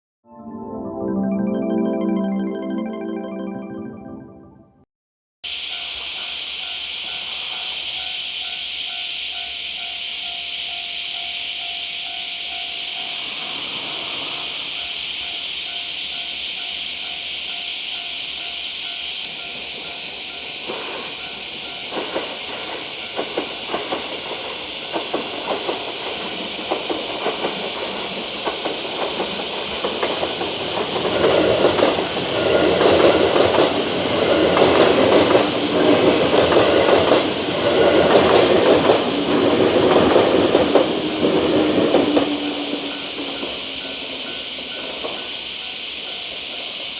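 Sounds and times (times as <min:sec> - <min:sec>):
steady hiss: 0:05.5 - 0:46.9
train passing with loud rush: 0:05.5 - 0:46.9
train wheels clacking on rails: 0:05.5 - 0:46.9.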